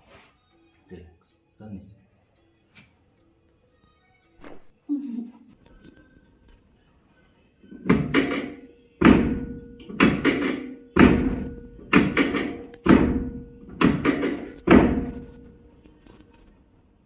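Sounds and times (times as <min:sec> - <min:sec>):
heavy thumps: 0:07.8 - 0:15.6.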